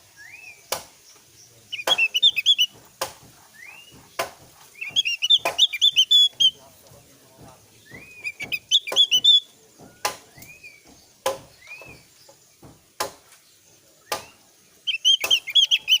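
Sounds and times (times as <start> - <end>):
bird chirping: 0.0 - 16.0
bird whistles: 0.2 - 0.6, 1.7 - 2.7, 4.8 - 6.6, 7.8 - 10.8, 14.1 - 16.0.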